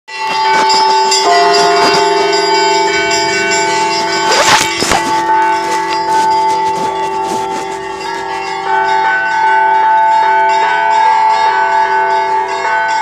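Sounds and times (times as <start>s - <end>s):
large bells ringing: 0.1s - 4.3s, 5.0s - 13.0s
small bells struck rapidly: 0.1s - 4.4s.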